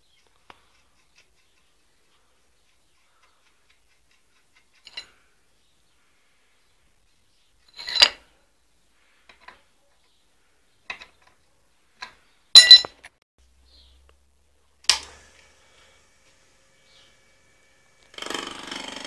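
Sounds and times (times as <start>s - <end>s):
metal objects clinking: 4.1s - 5.2s.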